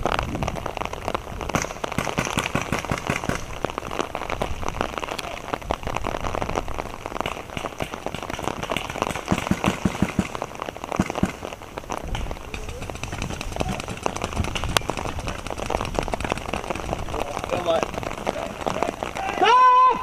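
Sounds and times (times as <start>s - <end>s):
rain pattering: 0.0s - 20.0s.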